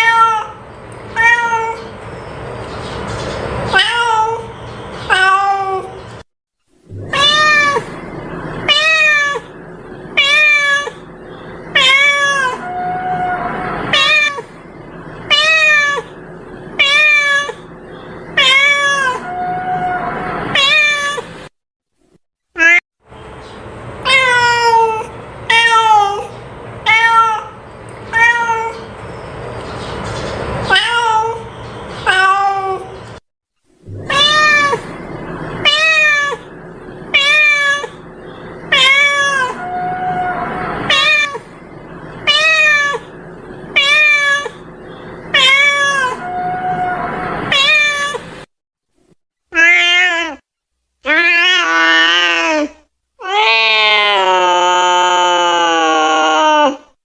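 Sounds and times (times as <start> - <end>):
cat meowing: 0.0 - 1.9, 3.7 - 4.5, 5.1 - 6.0, 6.9 - 8.0, 8.7 - 9.6, 10.2 - 11.1, 11.7 - 14.5, 15.3 - 16.1, 16.8 - 17.7, 18.4 - 21.3, 22.6 - 22.8, 24.0 - 26.3, 26.9 - 28.9, 30.7 - 33.0, 33.9 - 34.9, 35.6 - 36.5, 37.1 - 38.0, 38.7 - 41.5, 42.2 - 43.1, 43.7 - 44.7, 45.3 - 48.3, 49.5 - 50.4, 51.0 - 56.9.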